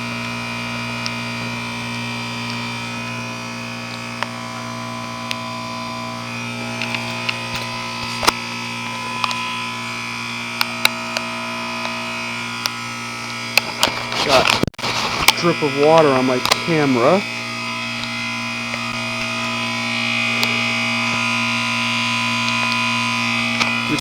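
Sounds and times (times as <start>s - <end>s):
heat pump hum with hiss: 0.0s - 24.0s.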